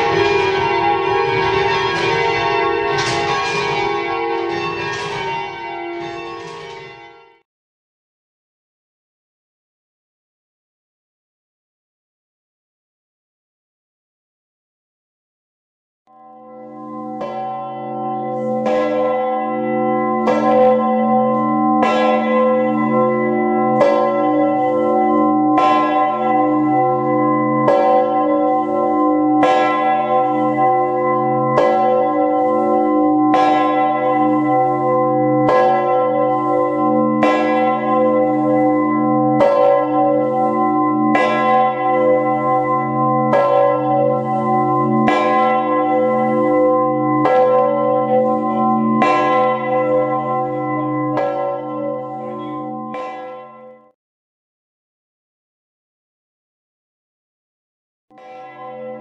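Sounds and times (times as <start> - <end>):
deep bell ringing: 0.0 - 7.4, 16.2 - 53.4.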